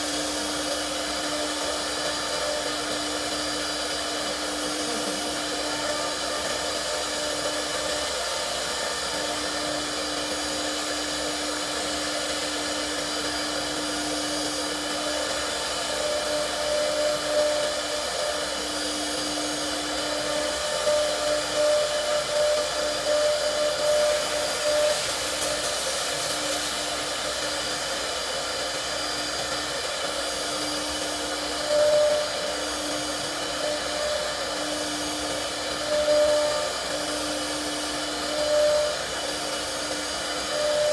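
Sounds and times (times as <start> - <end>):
router spindle whining: 0.0 - 40.9.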